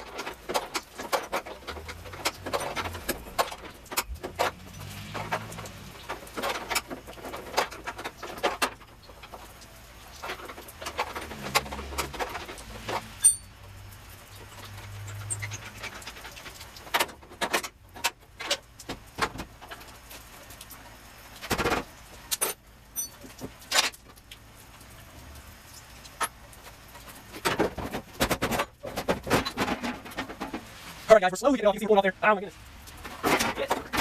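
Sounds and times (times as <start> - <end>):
metal tools clinking and rattling: 0.0 - 9.4, 10.2 - 13.6, 21.6 - 24.0.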